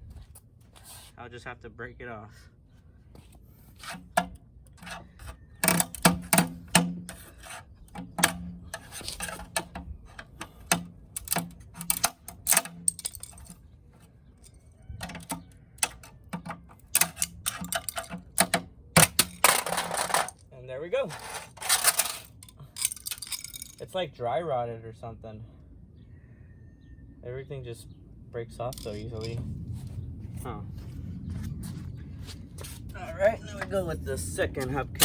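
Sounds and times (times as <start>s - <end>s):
plastic hubcap cracking and clattering: 5.6s - 13.6s, 15.0s - 20.4s.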